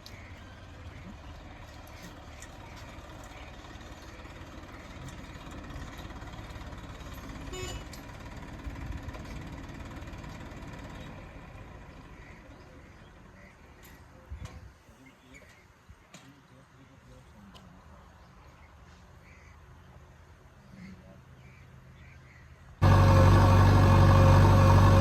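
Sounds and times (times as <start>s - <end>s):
heavy diesel engine running: 0.0s - 13.0s, 22.8s - 25.0s.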